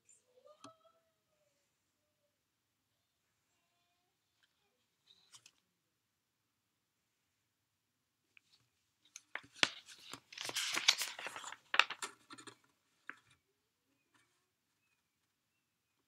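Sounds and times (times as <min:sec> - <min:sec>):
rustling and crinkling: 0:08.4 - 0:13.4.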